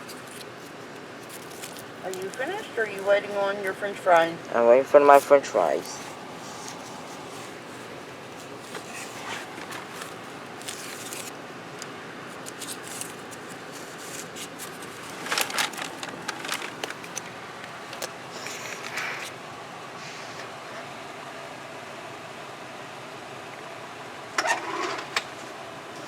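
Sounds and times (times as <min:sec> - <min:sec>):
small clicks and scrapes: 0:00.0 - 0:03.2, 0:06.4 - 0:19.3
rustling inside a car: 0:00.0 - 0:04.4, 0:05.0 - 0:19.3.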